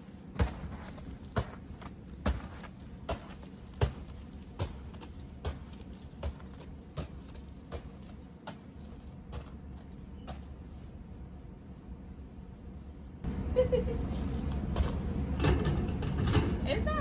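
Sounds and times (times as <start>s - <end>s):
footsteps in snow: 0.0s - 11.0s, 14.1s - 15.3s.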